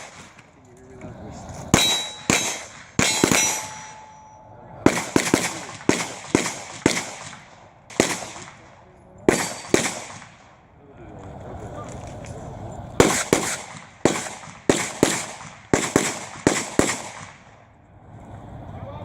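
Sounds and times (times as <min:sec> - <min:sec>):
pistol shots: 0:00.0 - 0:00.5, 0:01.7 - 0:04.0, 0:04.8 - 0:10.6, 0:13.0 - 0:17.6
metallic ring of steel targets: 0:01.7 - 0:05.7, 0:08.4 - 0:09.8.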